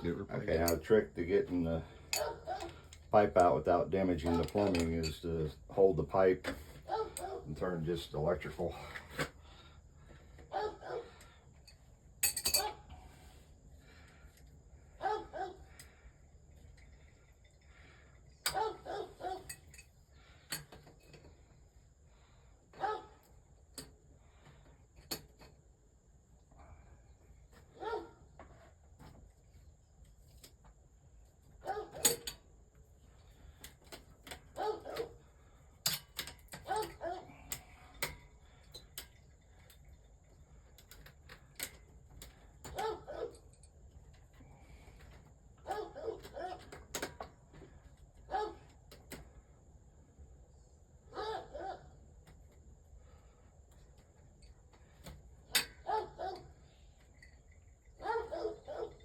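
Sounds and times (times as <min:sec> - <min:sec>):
dog barking: 0:02.2 - 0:02.7, 0:10.5 - 0:11.2, 0:15.0 - 0:15.6, 0:18.5 - 0:19.4, 0:22.8 - 0:23.2, 0:27.8 - 0:28.2, 0:31.6 - 0:32.0, 0:34.6 - 0:35.1, 0:42.8 - 0:43.4, 0:45.7 - 0:46.6, 0:48.3 - 0:48.6, 0:51.1 - 0:51.9, 0:55.8 - 0:56.5, 0:58.0 - 0:59.0.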